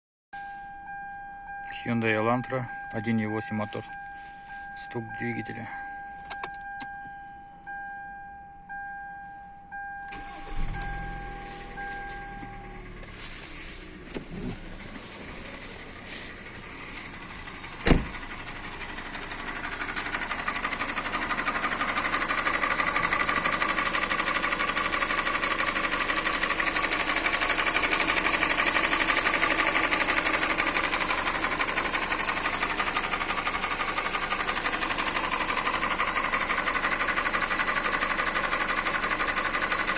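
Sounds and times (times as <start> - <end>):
car warning beep: 0.4 - 13.0
engine starting with low rumble: 9.7 - 39.9
engine clattering: 13.9 - 39.9.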